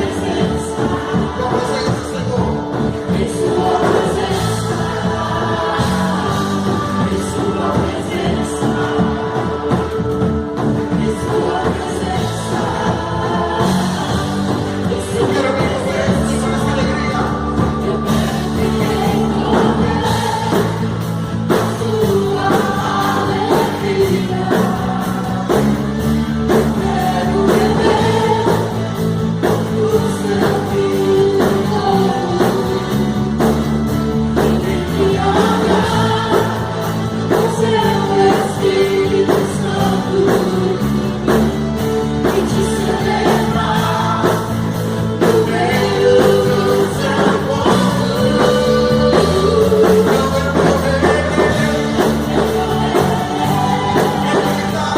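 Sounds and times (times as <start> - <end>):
drum kit beat: 0.0 - 54.9
gospel band with singing: 0.0 - 54.9.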